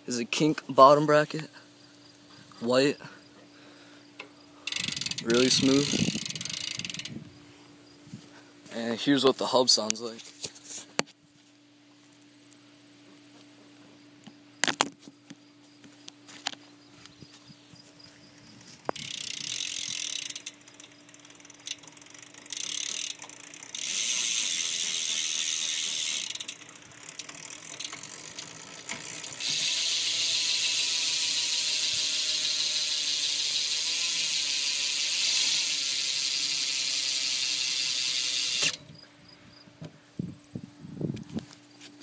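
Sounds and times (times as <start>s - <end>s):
bicycle hub freewheel buzzing: 3.6s - 7.4s, 18.5s - 38.9s.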